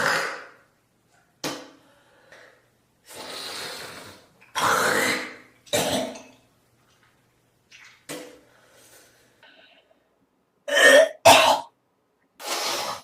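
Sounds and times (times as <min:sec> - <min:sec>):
person coughing hard: 0:10.7 - 0:11.7.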